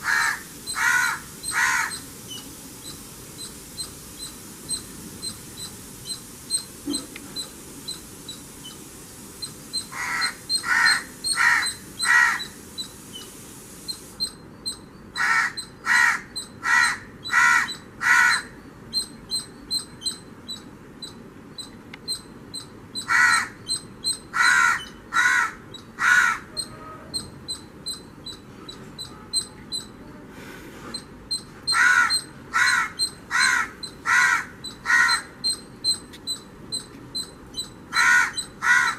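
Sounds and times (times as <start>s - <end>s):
crow cawing: 0.0s - 2.0s, 9.9s - 12.5s, 15.2s - 18.5s, 23.1s - 23.6s, 24.4s - 26.5s, 31.7s - 35.3s, 37.9s - 38.9s.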